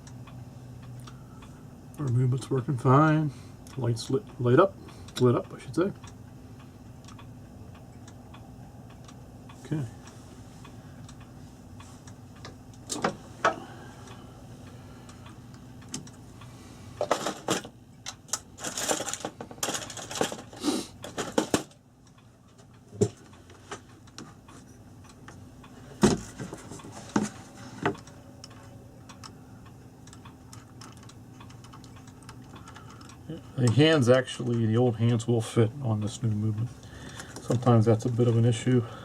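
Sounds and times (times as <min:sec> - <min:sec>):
low electrical hum: 0:00.0 - 0:39.0
small clock parts clicking: 0:27.9 - 0:35.2.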